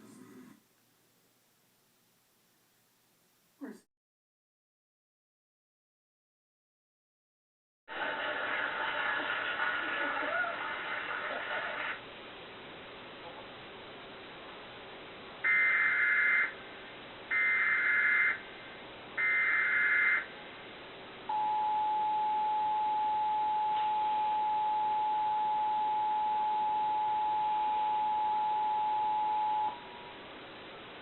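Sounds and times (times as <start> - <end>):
two-tone attention signal: 21.3 - 29.8.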